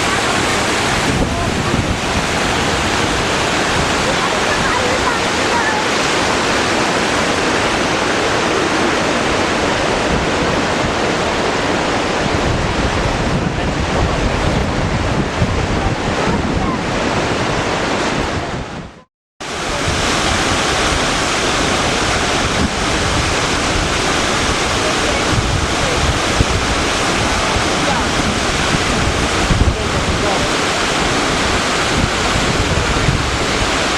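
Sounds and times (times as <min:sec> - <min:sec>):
waterfall rushing: 0:00.0 - 0:33.9
wind buffeting microphone: 0:00.0 - 0:33.9.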